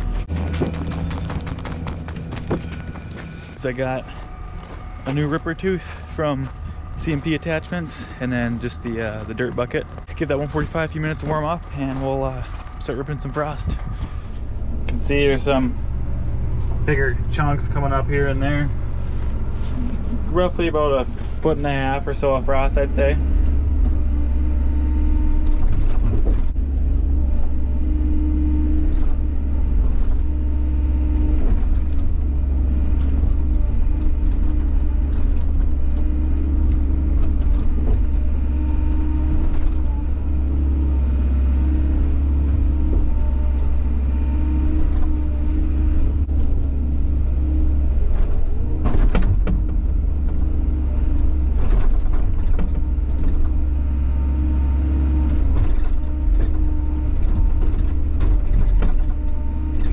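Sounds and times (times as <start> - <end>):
diesel engine running: 0.0 - 59.9
knocks and clanks of ground breaking: 0.3 - 3.6.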